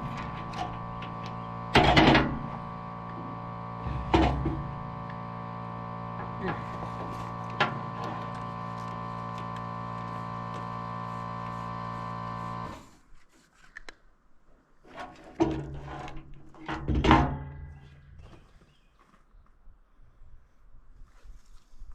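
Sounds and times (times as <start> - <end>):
knocks and clunks: 0.0 - 5.4, 6.1 - 8.4
air compressor humming: 0.0 - 13.0.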